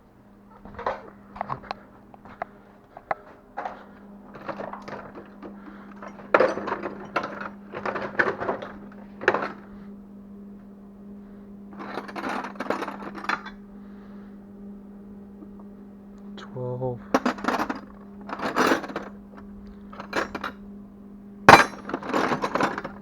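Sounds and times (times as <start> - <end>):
steady low hum: 0.0 - 23.0
metal tools clinking: 3.6 - 9.7, 11.8 - 13.6, 17.1 - 19.1, 20.0 - 20.5, 21.5 - 23.0.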